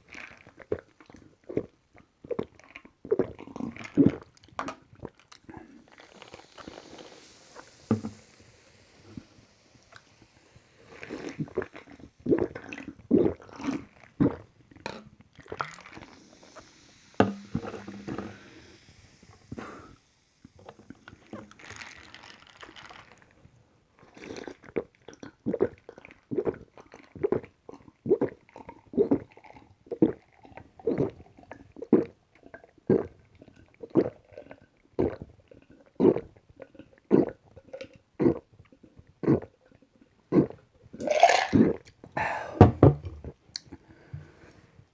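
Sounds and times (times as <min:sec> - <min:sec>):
person gulping soda: 0:00.0 - 0:44.5
sipping: 0:02.4 - 0:23.4, 0:28.1 - 0:35.2, 0:40.3 - 0:44.6
soda fizz hiss: 0:05.4 - 0:14.2, 0:15.5 - 0:23.4, 0:41.0 - 0:42.7.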